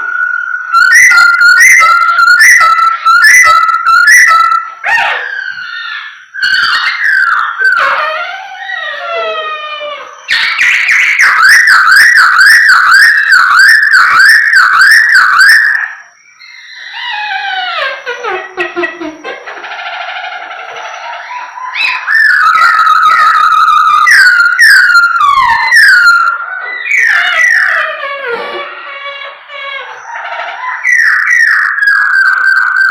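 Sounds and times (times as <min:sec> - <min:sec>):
bird singing whistled phrases: 0:00.0 - 0:09.2, 0:10.1 - 0:17.3, 0:21.2 - 0:27.9, 0:29.9 - 0:32.9.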